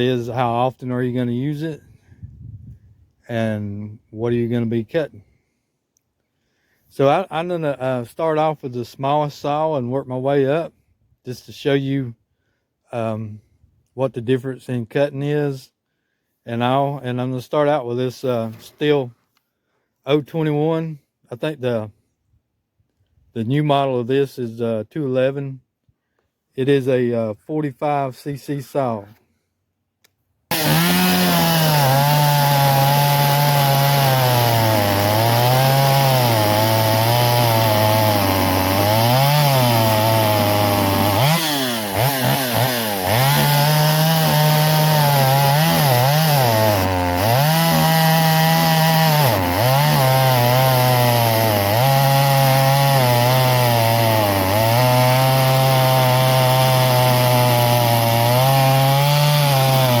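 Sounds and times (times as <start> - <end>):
chainsaw cutting through wood: 0.0 - 1.8, 30.5 - 60.0.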